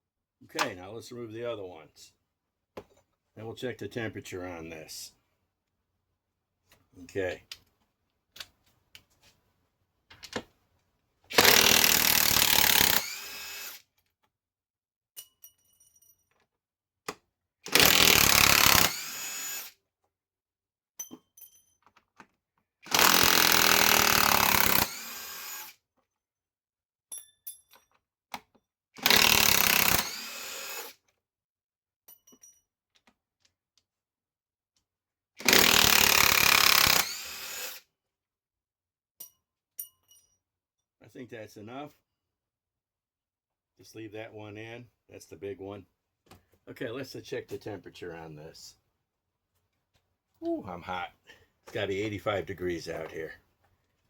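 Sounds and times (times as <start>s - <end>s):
impact wrench loosening fasteners: 11.3s - 13.6s, 17.7s - 19.6s.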